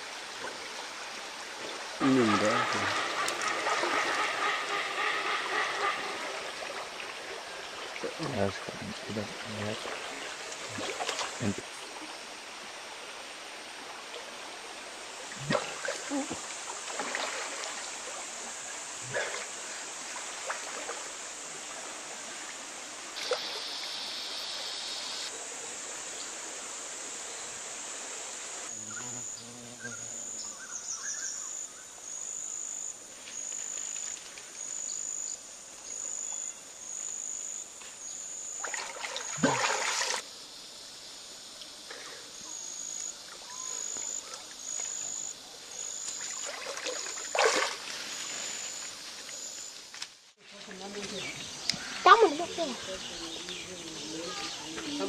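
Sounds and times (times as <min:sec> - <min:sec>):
water splashes: 0:00.0 - 0:25.4, 0:38.5 - 0:40.3, 0:43.2 - 0:49.5
insect calling in pulses: 0:41.8 - 0:49.9.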